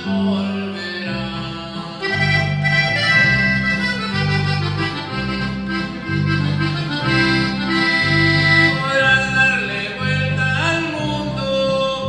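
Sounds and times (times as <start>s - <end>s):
electric bass notes: 0.0s - 12.0s
lead melody: 1.9s - 9.7s.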